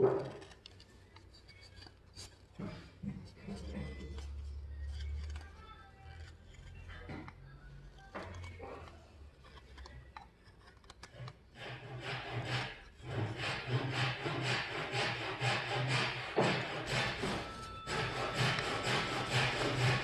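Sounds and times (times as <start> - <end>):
rubbing scraping strokes: 10.5 - 20.0.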